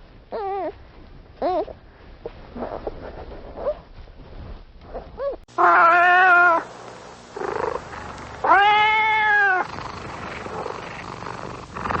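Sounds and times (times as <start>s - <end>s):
young cat meowing: 5.6s - 6.6s, 8.4s - 9.7s.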